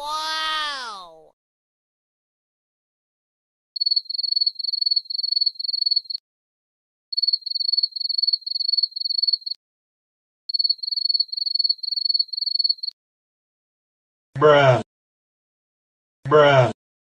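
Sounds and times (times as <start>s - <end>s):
cricket chirping: 3.8s - 6.2s, 7.1s - 9.6s, 10.5s - 12.9s.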